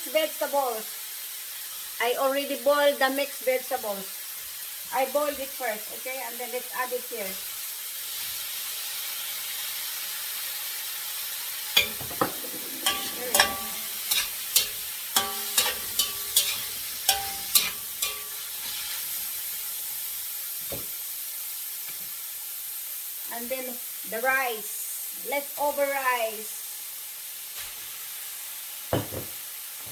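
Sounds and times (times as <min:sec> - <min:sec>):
food sizzling in a frying pan: 0:00.0 - 0:29.9
spatula clanking against pan: 0:11.8 - 0:18.6.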